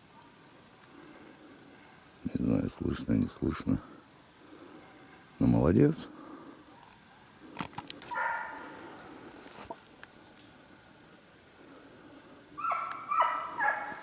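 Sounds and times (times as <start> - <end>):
distant dog barking: 8.1 - 8.8, 12.6 - 14.0.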